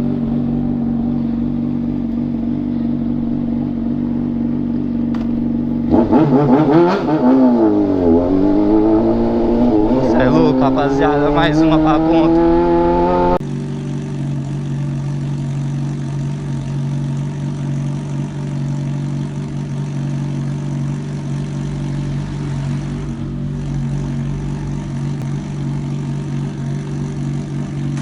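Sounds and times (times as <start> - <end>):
motorcycle engine idling: 0.0 - 5.9, 13.4 - 28.0.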